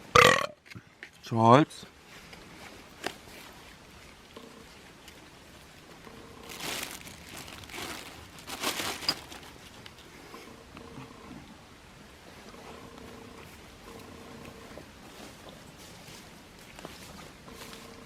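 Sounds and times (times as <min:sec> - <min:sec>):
crinkling and rustling: 0:02.1 - 0:10.1.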